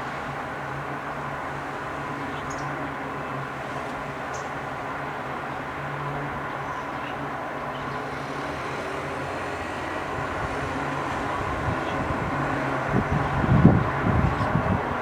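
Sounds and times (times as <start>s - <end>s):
jet engines rumbling: 0.0s - 15.0s
wind buffeting microphone: 7.6s - 15.0s.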